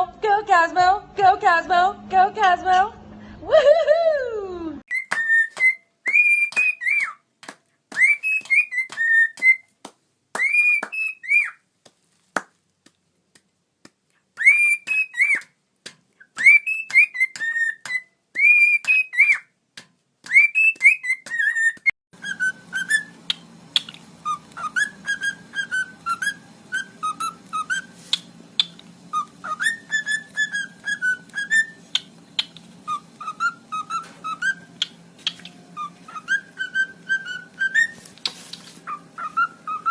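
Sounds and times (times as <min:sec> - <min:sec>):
parrot whistling a tune: 0:04.9 - 0:07.2, 0:08.0 - 0:09.7, 0:10.4 - 0:11.6, 0:14.4 - 0:15.5, 0:16.2 - 0:19.5, 0:20.3 - 0:39.9.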